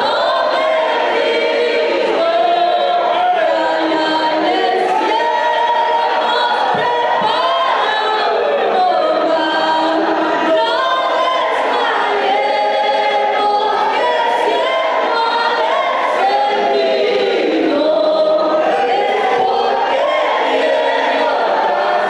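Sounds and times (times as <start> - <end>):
group of voices singing: 0.0 - 22.0.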